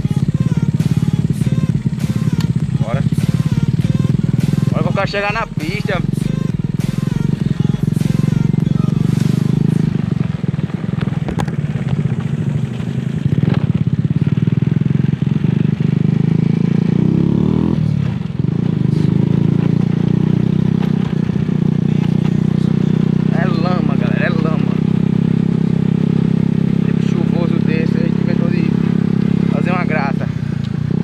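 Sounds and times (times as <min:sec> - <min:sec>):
motorcycle engine running: 0:00.0 - 0:31.0.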